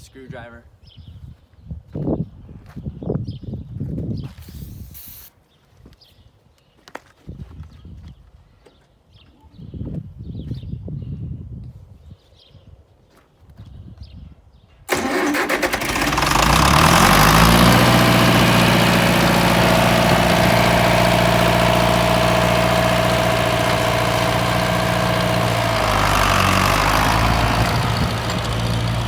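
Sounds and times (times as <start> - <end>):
tractor engine starting and running: 14.9 - 29.0.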